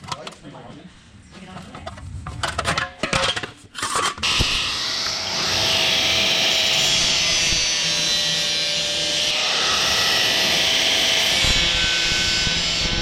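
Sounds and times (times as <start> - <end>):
power tool on metal: 4.2 - 13.0.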